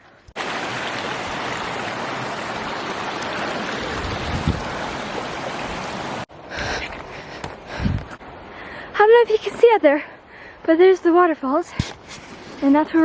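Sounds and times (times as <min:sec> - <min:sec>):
stream water rushing: 0:00.1 - 0:09.8.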